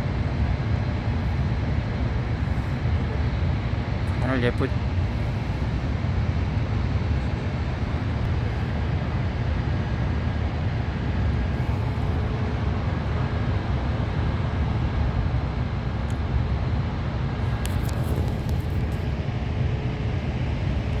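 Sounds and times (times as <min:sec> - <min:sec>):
low rumbling background noise: 0:00.0 - 0:21.0.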